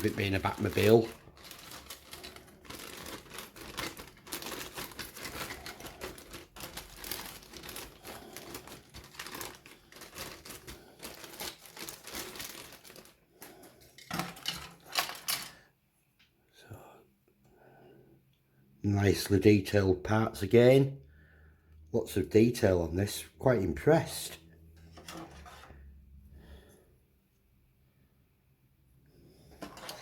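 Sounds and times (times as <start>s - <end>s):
plastic bag crinkling: 0.0s - 15.6s, 29.5s - 30.0s.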